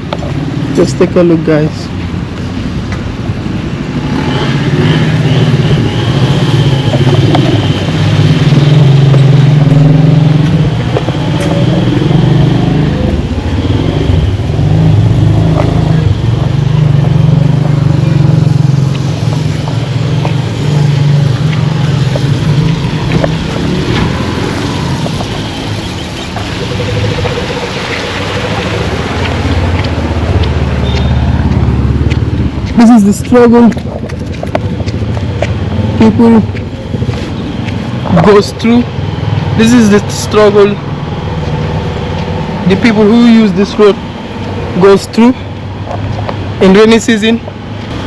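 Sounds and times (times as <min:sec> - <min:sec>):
vehicle engine running loudly: 0:02.4 - 0:46.8, 0:47.5 - 0:48.0.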